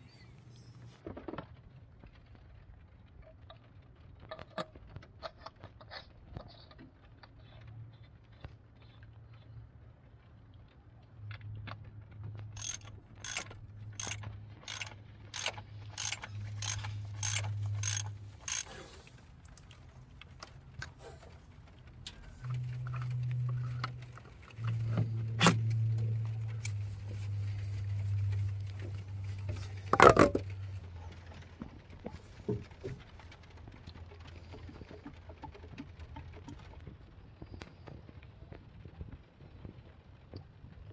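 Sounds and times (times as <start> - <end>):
socket ratchet wrench clicking: 12.6 - 18.8.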